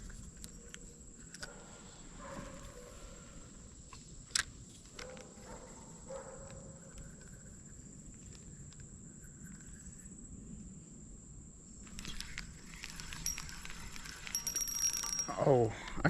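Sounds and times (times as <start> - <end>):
high-pitched insect drone: 11.8 - 15.8.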